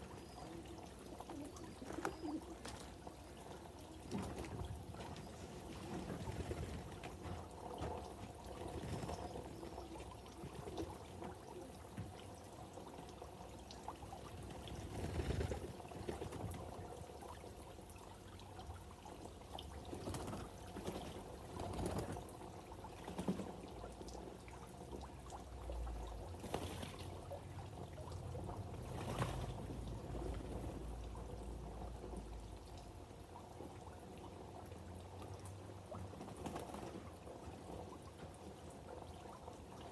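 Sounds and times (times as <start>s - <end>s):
water pouring and trickling: 0.0s - 39.9s.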